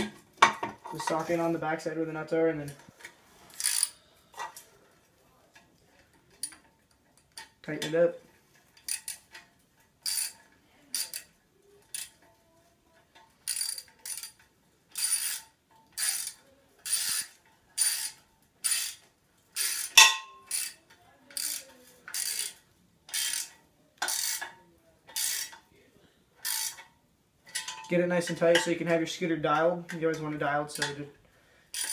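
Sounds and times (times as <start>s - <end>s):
ratchet wrench clicking: 3.5s - 4.0s, 8.8s - 9.4s, 10.0s - 11.3s, 13.4s - 20.8s, 21.4s - 24.5s, 25.1s - 25.6s, 26.4s - 26.9s.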